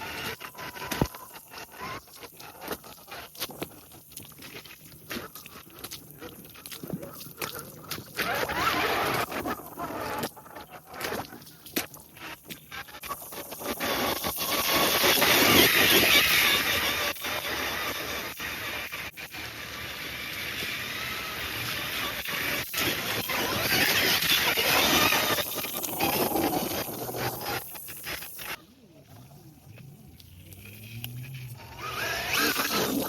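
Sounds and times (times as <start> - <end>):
vehicle running: 29.7 - 33.0.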